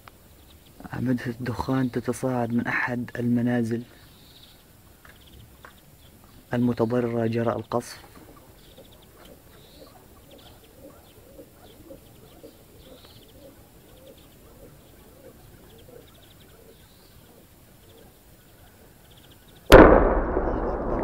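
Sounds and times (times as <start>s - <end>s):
birds trilling and chirping: 0.0s - 19.8s.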